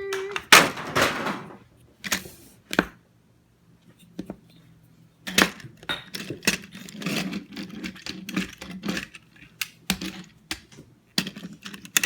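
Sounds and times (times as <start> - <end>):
plastic toy clicks and rattles: 5.3 - 10.3.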